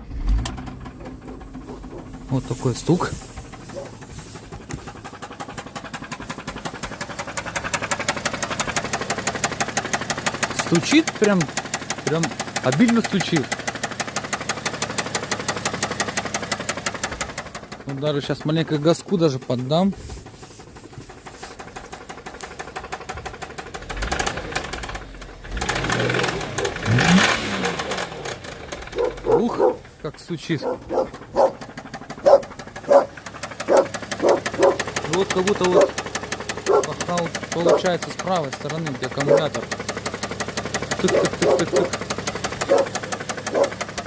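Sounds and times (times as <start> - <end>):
car engine idling: 0.0 - 44.0
engine knocking: 0.0 - 44.0.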